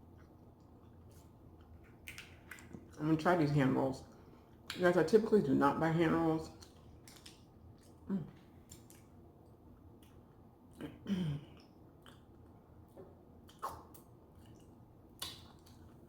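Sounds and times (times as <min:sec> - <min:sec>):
person chewing: 0:08.6 - 0:09.1, 0:09.8 - 0:16.0.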